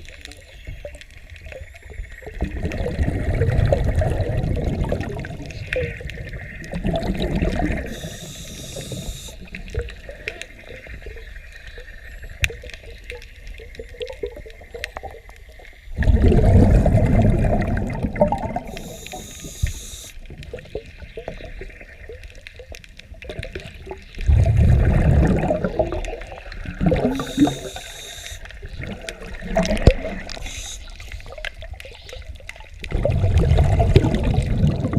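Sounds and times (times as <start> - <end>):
faint clicks and crackles: 0.0 - 34.9
exhaled bubbles rushing: 0.9 - 34.9
regulator air hiss: 7.8 - 9.4, 18.6 - 20.2, 27.1 - 28.5, 30.2 - 31.4.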